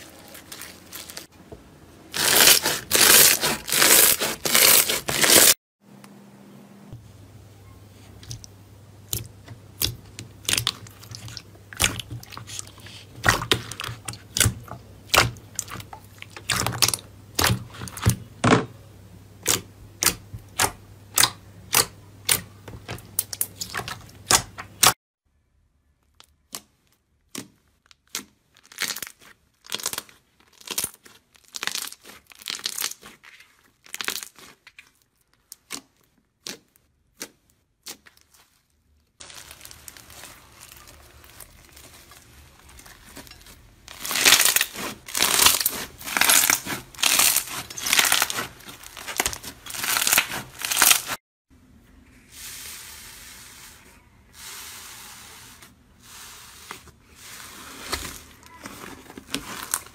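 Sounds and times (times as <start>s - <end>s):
crunchy slime crackling: 2.1s - 5.6s, 9.1s - 18.1s, 26.1s - 51.2s, 57.7s - 59.9s
low background hum: 5.8s - 24.7s.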